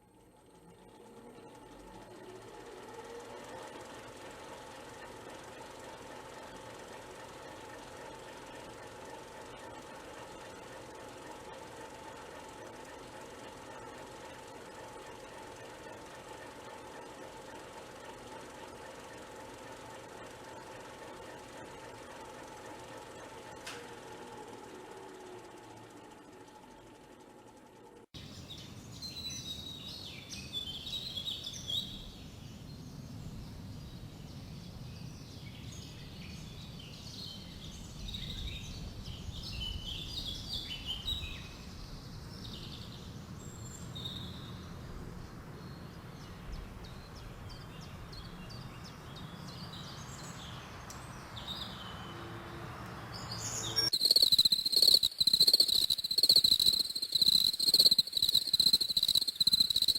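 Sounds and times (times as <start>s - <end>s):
low outdoor rumble: 0.0s - 29.2s
crickets chirring: 53.7s - 59.9s.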